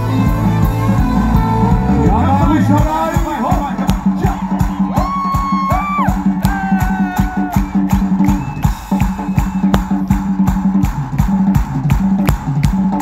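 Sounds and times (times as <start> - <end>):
lead instrument bending notes: 0.0 - 4.0
bass line: 0.0 - 12.7
drum beat: 0.0 - 13.0.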